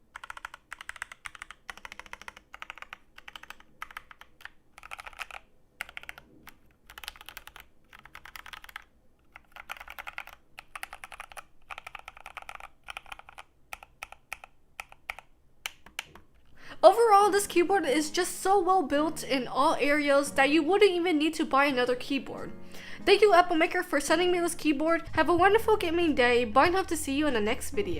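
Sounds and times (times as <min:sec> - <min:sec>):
mechanical keyboard keystrokes clacking: 0:00.1 - 0:16.3.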